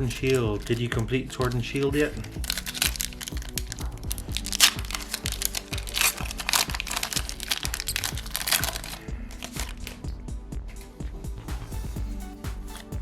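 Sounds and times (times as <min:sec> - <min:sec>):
foil wrapper crinkling and tearing: 0:00.0 - 0:10.1
background music with steady beat: 0:00.0 - 0:13.0.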